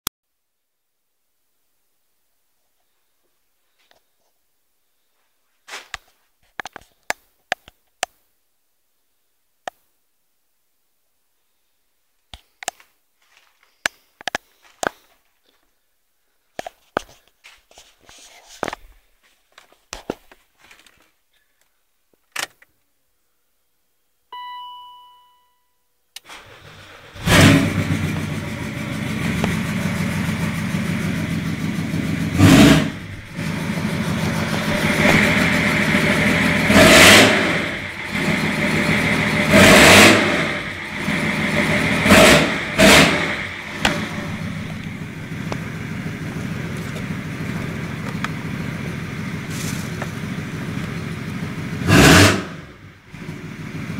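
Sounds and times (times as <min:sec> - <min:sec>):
short beep: 0:24.3 - 0:25.9
diesel engine starting: 0:26.2 - 0:53.9
diesel engine idling: 0:26.3 - 0:53.9
engine revving: 0:26.3 - 0:53.9.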